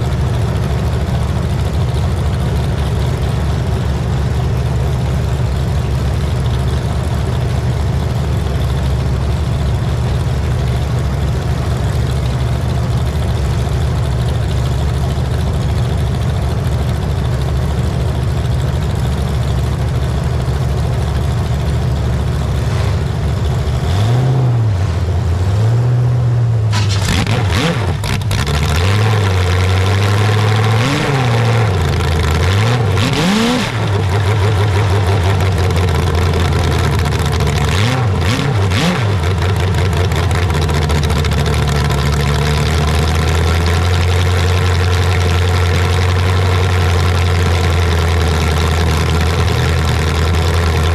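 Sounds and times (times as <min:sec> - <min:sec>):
engine idling and revving: 0:00.0 - 0:50.9
harsh rushing noise: 0:22.2 - 0:25.8.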